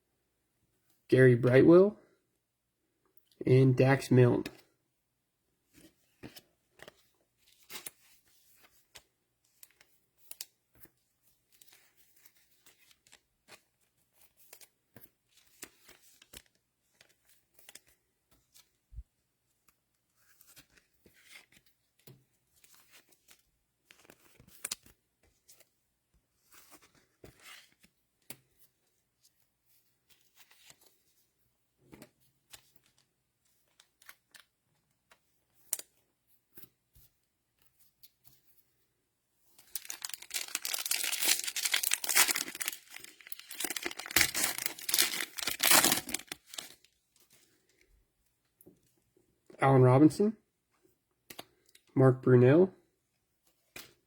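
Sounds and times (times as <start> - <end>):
cellophane packs tearing and rustling: 39.6 - 46.9.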